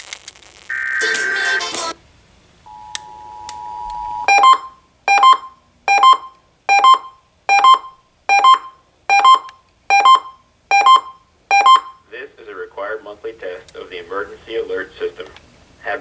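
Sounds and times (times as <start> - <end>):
sharp evenly spaced beeps: 2.7 - 12.0
two-tone attention signal: 2.7 - 12.0.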